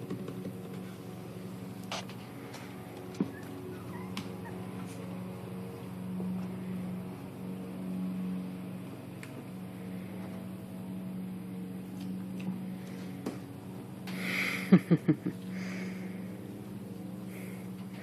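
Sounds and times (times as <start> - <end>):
steady low hum: 0.0 - 18.0
puppies squeaking: 3.2 - 4.6.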